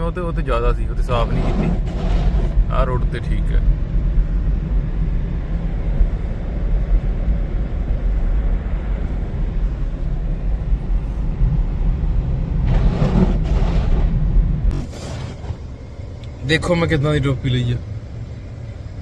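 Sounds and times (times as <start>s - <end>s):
car driving on snowy road: 0.0s - 19.0s
short rushing noise: 12.6s - 15.8s.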